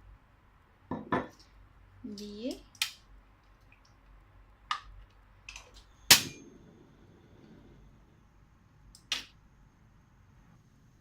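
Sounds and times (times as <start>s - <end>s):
metal kitchenware clanking: 6.1s - 6.5s.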